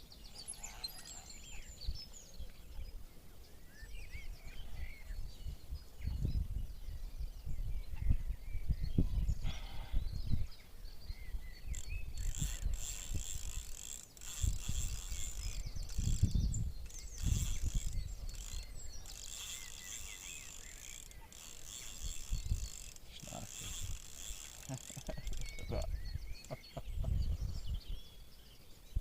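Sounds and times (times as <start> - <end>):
fishing reel ticking: 11.6 - 26.8.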